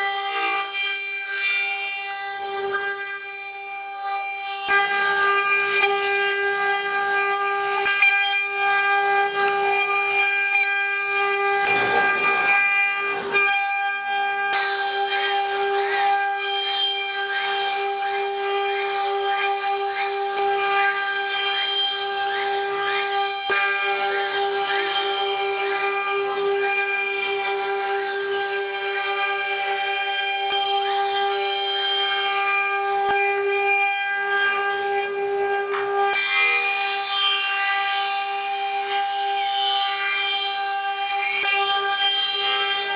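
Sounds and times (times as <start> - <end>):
cnc router spindle whining: 0.0 - 42.9
router cutting noise: 0.0 - 42.9.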